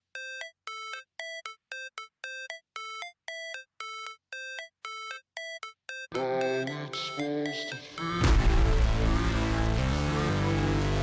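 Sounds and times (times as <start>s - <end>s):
electronic ringtone-like melody: 0.0s - 8.3s.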